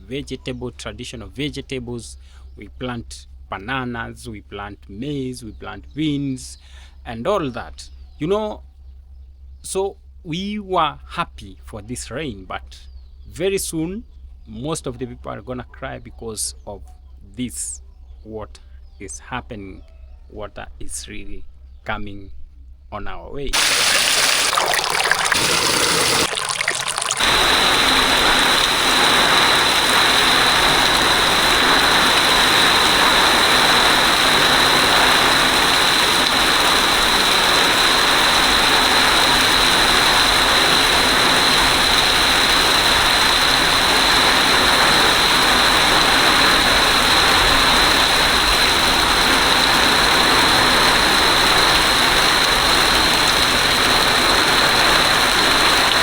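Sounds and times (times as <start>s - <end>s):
floodwater rushing: 23.6s - 56.0s.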